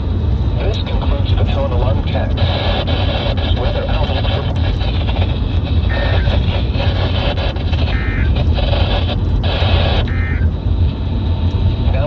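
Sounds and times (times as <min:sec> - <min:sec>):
low hum: 0:00.0 - 0:12.0
radio static: 0:00.5 - 0:10.9, 0:11.7 - 0:12.0
screechy digital data tones: 0:05.9 - 0:10.5.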